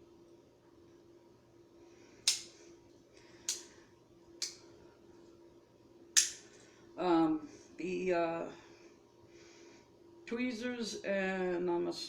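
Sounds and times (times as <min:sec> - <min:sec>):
faint steady hum: 0:00.0 - 0:12.0
pocket knife tools snapping: 0:02.3 - 0:02.5, 0:06.2 - 0:06.4.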